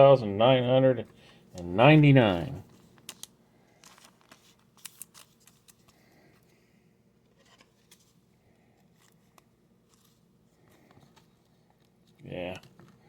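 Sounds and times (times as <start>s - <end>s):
trading cards being handled: 1.1s - 6.4s, 8.8s - 13.0s.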